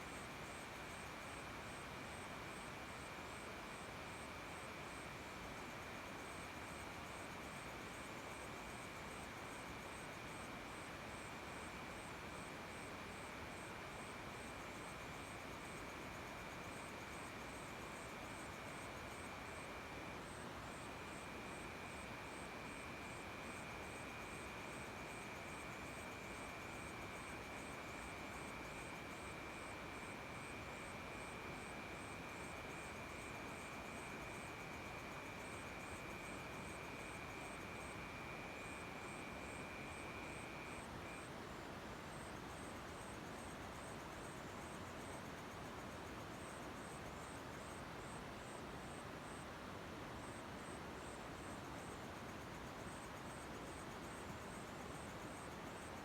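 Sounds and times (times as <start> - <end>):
steady hiss-like background: 0.0 - 56.0
cricket chirping: 20.3 - 41.3.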